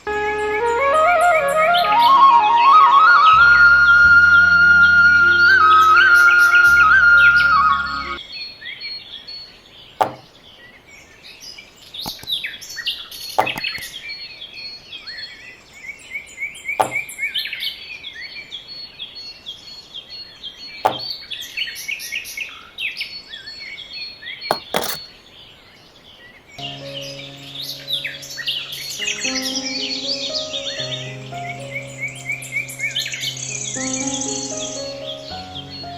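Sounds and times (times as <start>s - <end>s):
sharp click or knock: 10.0s - 10.3s, 12.1s - 12.3s, 13.4s - 13.9s, 16.8s - 17.1s, 20.9s - 21.1s, 24.5s - 25.0s
birds chirping and singing: 26.6s - 35.9s.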